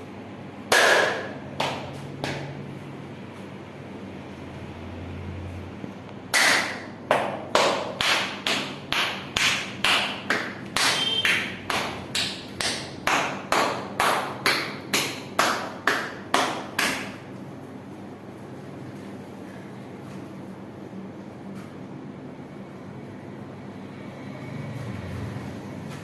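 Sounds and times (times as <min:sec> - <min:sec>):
hands slapping body: 0:06.4 - 0:17.2.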